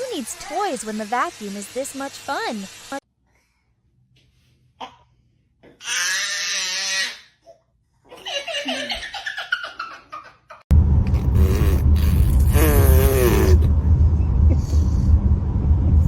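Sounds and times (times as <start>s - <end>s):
baby laughing: 8.1s - 10.6s
loud low rumbling: 10.7s - 16.0s.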